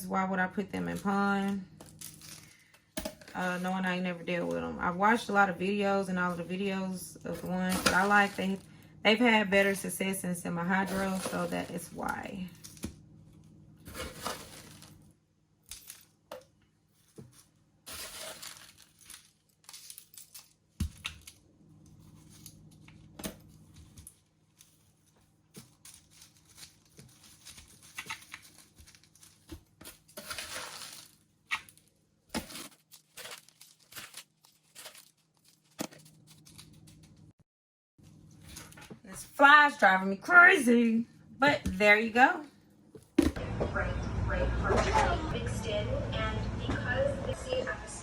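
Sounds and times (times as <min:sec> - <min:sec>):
faint steady hum: 0:00.0 - 0:18.4.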